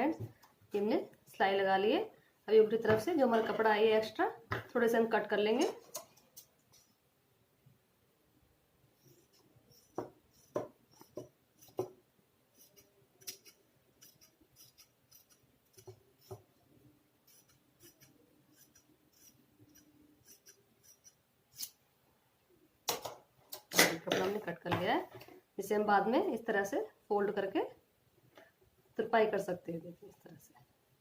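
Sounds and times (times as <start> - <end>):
scissors cutting cloth: 12.6 - 16.4, 17.3 - 21.8.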